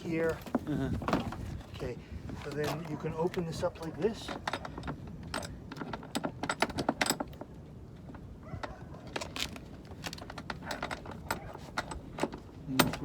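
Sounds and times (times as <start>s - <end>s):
metal hardware clicking and clinking: 8.6s - 13.0s.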